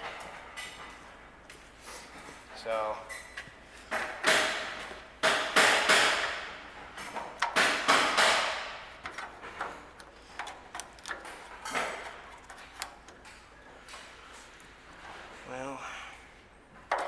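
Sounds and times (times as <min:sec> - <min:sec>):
hands handling small parts and tools: 0:07.0 - 0:15.5.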